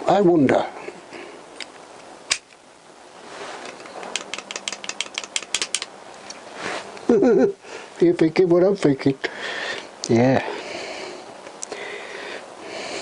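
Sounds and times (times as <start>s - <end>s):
small metal parts clicking: 3.7s - 5.9s.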